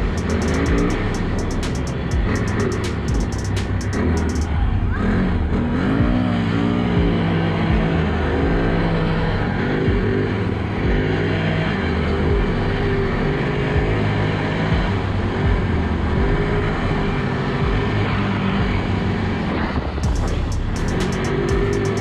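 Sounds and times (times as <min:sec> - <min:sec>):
sharp clicks: 0:00.0 - 0:04.5, 0:20.1 - 0:22.0.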